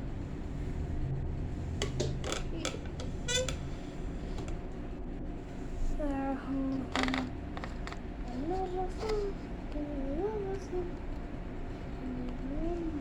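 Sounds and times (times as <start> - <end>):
short squeak: 3.3 - 3.6
plastic toy parts clicking: 6.9 - 8.0.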